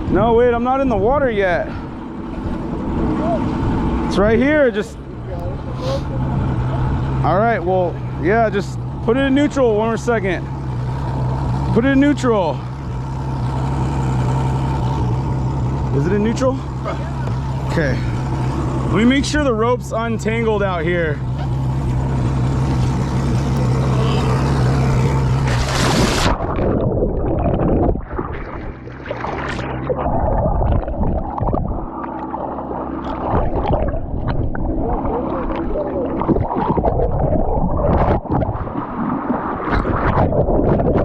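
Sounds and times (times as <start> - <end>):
boat motor idling: 0.0 - 41.0
water gurgling and sloshing: 0.0 - 41.0.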